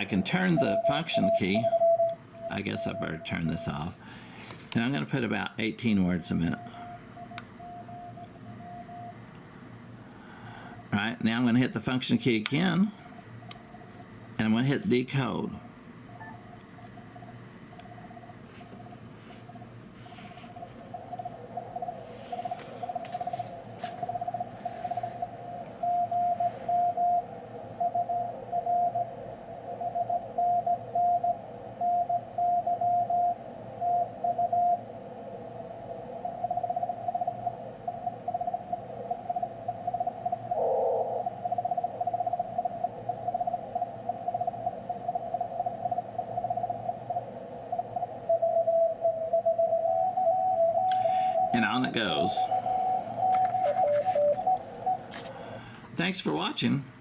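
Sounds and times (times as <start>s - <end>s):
morse code tone: 0.0s - 4.0s, 5.6s - 9.2s, 16.1s - 18.4s, 19.3s - 34.9s, 36.2s - 55.4s
lower-pitched morse signal: 0.0s - 4.2s, 4.8s - 55.6s
radio band hiss: 0.0s - 7.6s, 10.2s - 15.7s, 16.3s - 26.8s, 51.0s - 56.9s.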